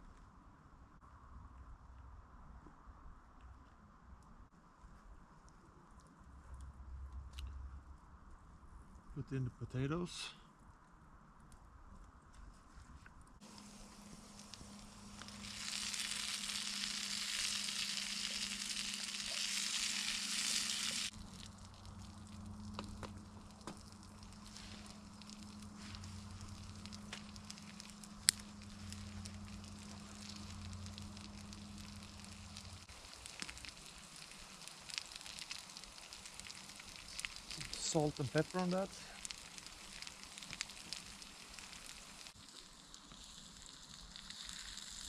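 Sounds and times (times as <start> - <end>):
low steady hum: 0.0 - 43.4
potatoes sizzling in a pan: 13.4 - 21.4, 23.6 - 45.0.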